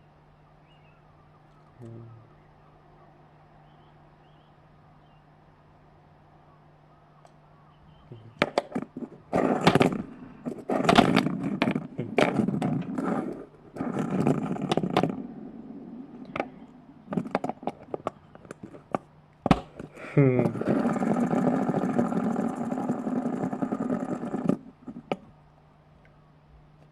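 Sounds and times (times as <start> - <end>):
hard small parts scraping: 8.4 - 25.3.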